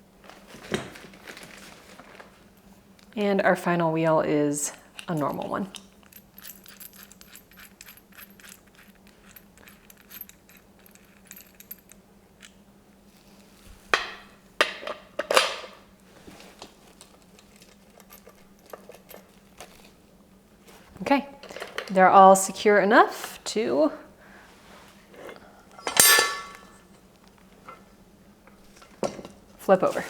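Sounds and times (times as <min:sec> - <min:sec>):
small metal hardware clinking: 0:05.0 - 0:12.6, 0:17.1 - 0:19.4, 0:25.8 - 0:26.9
metal clatters: 0:25.8 - 0:26.8.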